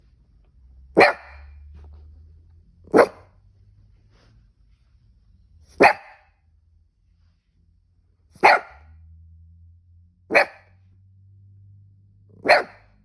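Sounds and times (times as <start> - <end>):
dog barking: 0.9 - 1.7, 2.8 - 3.4, 5.7 - 6.4, 8.4 - 9.0, 10.3 - 10.8, 12.3 - 13.0
dog hiccups: 5.8 - 6.2, 12.4 - 12.8.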